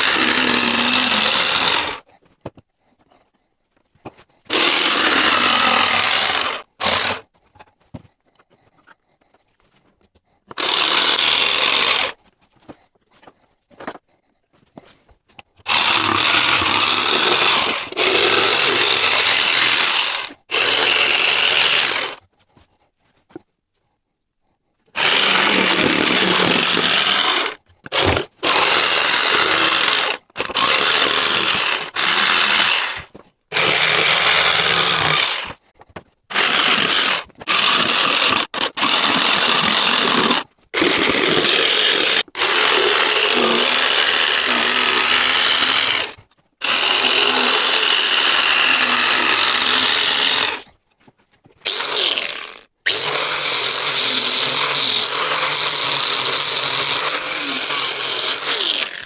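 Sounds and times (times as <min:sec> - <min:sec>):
power tool cutting wood: 0:00.0 - 0:02.1, 0:04.5 - 0:07.2, 0:10.5 - 0:12.2, 0:15.6 - 0:22.2, 0:25.0 - 0:35.6, 0:36.3 - 0:50.7, 0:51.6 - 0:59.0.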